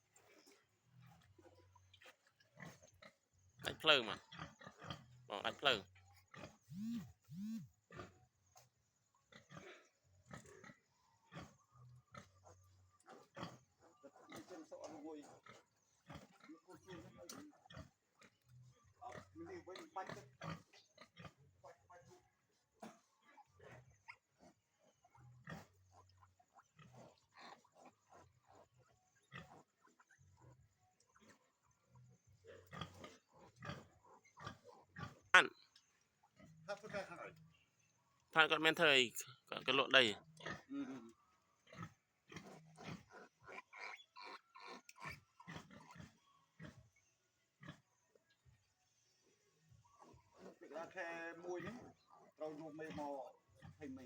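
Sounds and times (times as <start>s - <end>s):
pig grunts: 0.0s - 37.8s, 38.4s - 48.7s, 49.8s - 54.0s
piglets squeaking: 43.5s - 46.1s.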